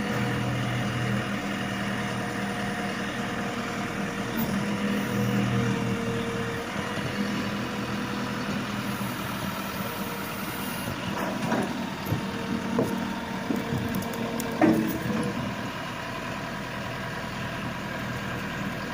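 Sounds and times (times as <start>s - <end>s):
diesel engine running: 0.0s - 18.9s
machine clunks and knocks: 11.1s - 13.9s, 14.5s - 15.5s.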